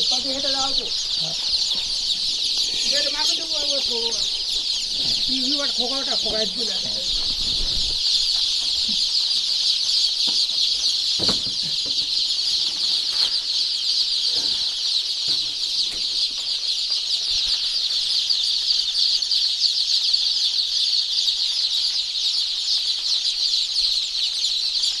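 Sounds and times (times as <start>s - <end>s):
chicks peeping: 0.0s - 25.0s.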